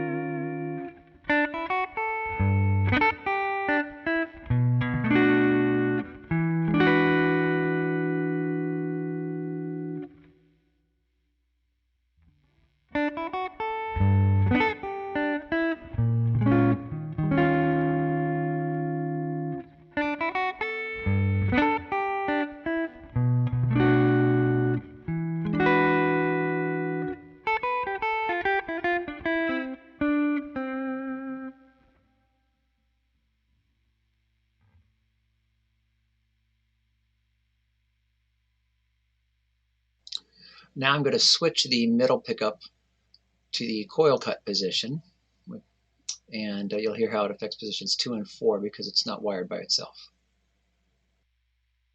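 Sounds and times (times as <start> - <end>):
clean electric guitar chords: 0.0 - 10.1, 13.0 - 31.6.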